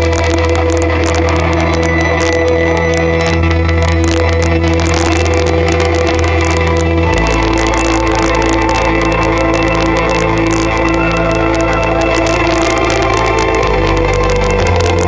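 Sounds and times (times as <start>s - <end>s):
loud music with bass and chords: 0.0s - 15.0s.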